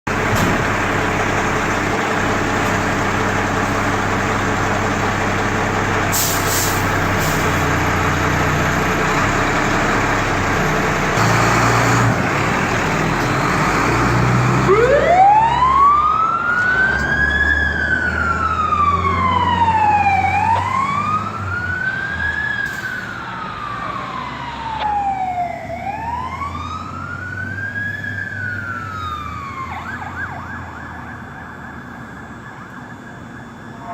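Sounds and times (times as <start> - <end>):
fire truck engine hum: 0.0 - 33.9
wailing siren: 13.9 - 33.9.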